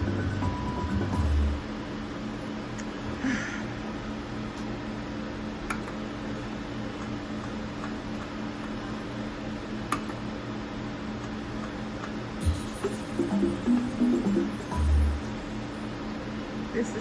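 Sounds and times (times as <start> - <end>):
slot machine electronic hum: 0.0 - 2.1, 11.0 - 17.0.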